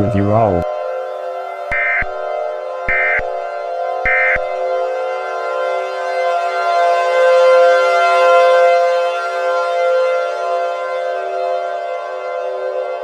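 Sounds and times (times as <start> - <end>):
civil defense siren: 0.7 - 13.0
digital data burst tones: 1.7 - 4.6.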